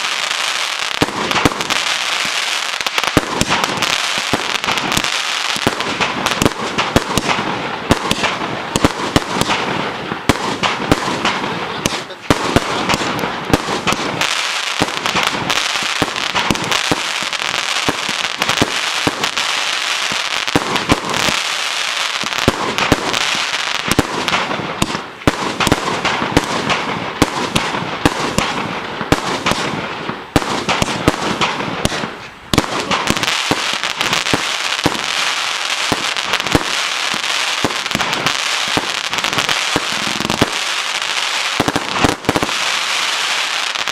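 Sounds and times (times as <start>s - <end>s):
firework cake firing: 0.0s - 43.9s.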